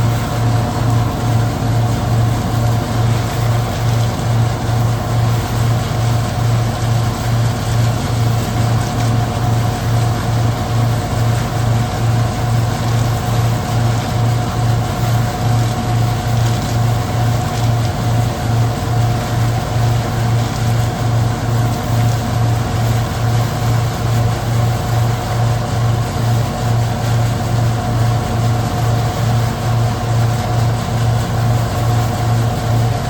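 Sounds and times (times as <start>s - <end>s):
threshing machine throbbing: 0.0s - 13.8s.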